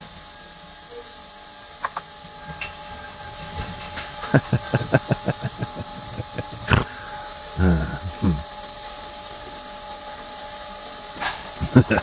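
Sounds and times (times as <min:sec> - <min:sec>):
faint steady hum: 0:02.3 - 0:09.5, 0:11.5 - 0:12.0.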